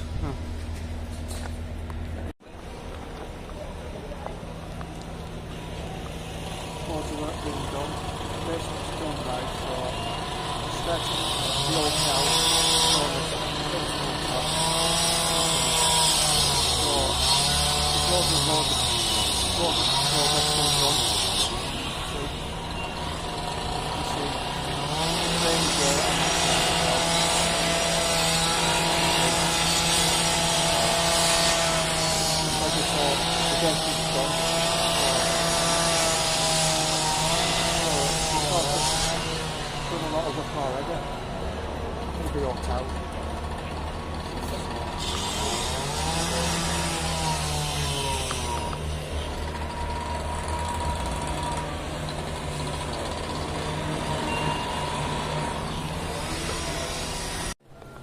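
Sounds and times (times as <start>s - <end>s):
construction machinery drone: 0.0s - 58.0s.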